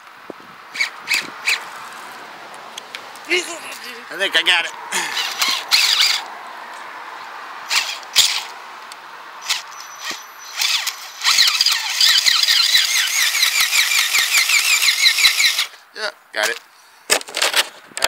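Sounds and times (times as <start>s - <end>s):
metal chain squeaking: 5.2s - 6.2s, 9.4s - 15.7s.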